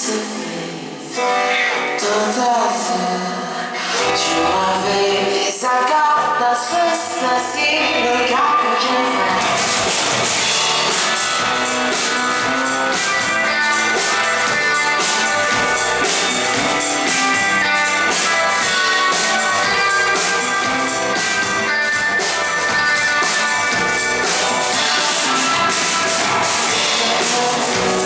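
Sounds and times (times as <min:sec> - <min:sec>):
electric guitars: 0:00.0 - 0:28.0
person singing: 0:00.0 - 0:28.0
drum kit with cymbal hits: 0:03.9 - 0:05.4, 0:06.1 - 0:28.0.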